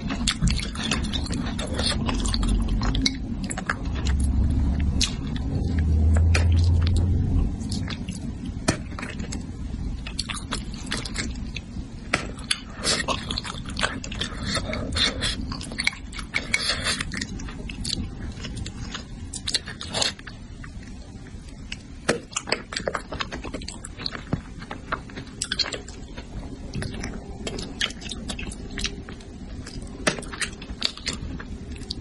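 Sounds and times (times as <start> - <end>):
low hum: 0.0 - 22.0
chewing and wet mouth sounds: 0.0 - 32.0.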